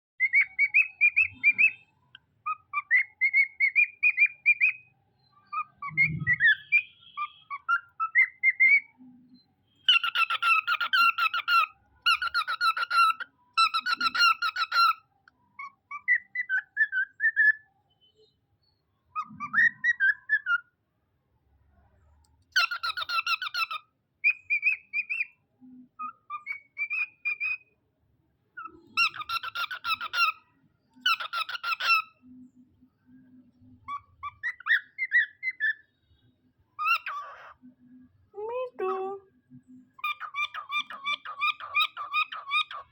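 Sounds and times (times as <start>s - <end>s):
parrot chattering calls: 22.6s - 23.9s, 28.6s - 32.2s, 40.0s - 42.9s.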